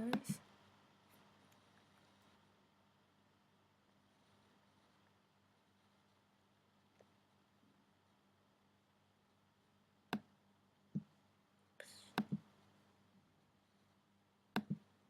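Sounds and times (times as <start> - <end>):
computer mouse clicks: 12.1 - 12.5, 14.5 - 14.9.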